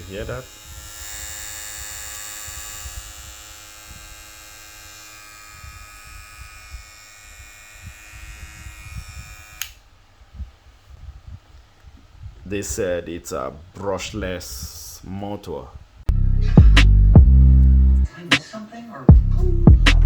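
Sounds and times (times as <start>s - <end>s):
hair clipper buzzing: 0.0s - 9.9s.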